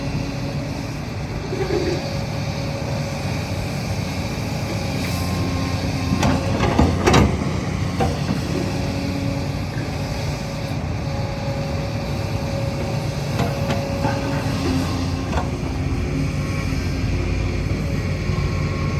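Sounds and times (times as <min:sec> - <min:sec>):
excavator diesel engine running: 0:00.0 - 0:18.9.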